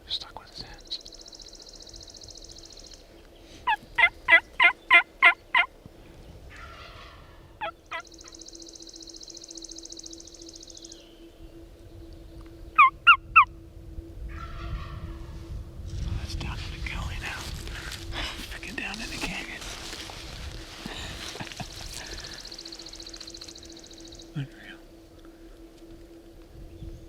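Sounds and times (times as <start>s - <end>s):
turkey yelping: 3.7s - 5.7s.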